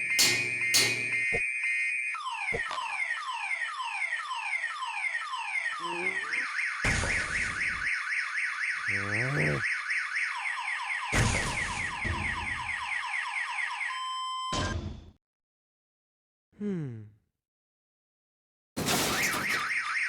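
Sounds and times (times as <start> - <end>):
car alarm siren: 0.0 - 14.7, 19.1 - 20.0.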